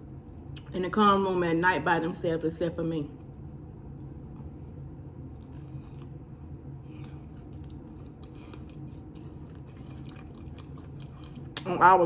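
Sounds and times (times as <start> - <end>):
low hum: 0.0 - 12.0
person chewing food: 3.5 - 11.7.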